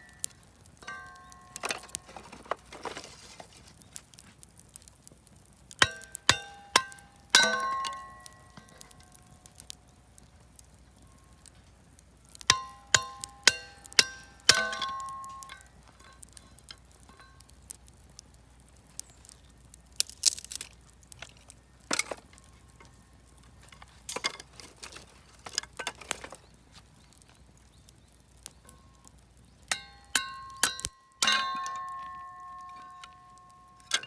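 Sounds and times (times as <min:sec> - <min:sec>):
fire crackling: 0:00.0 - 0:34.0
wood pieces knocking together: 0:00.1 - 0:03.8, 0:20.0 - 0:22.9, 0:23.6 - 0:26.4.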